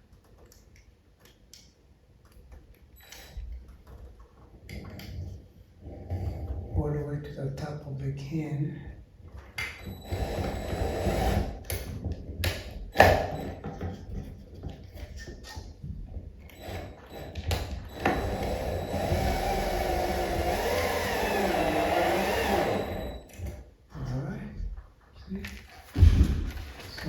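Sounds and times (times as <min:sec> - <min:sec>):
cordless drill driving screw: 0:09.6 - 0:13.6, 0:16.4 - 0:23.6.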